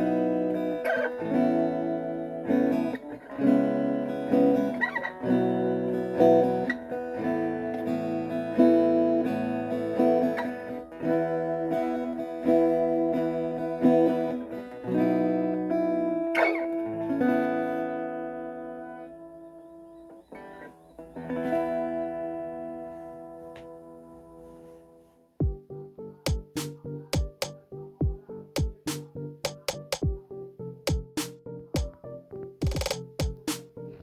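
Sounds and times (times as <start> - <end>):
acoustic guitar strummed chords: 0.0 - 19.2, 25.4 - 30.2.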